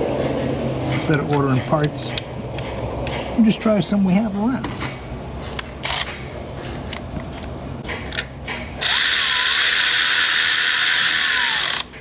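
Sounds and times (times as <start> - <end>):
power ratchet running: 8.8 - 12.0.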